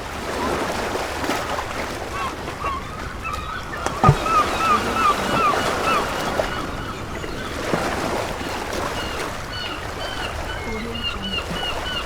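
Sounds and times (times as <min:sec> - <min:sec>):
waves washing on beach: 0:00.0 - 0:12.0
seagulls calling: 0:01.8 - 0:12.0.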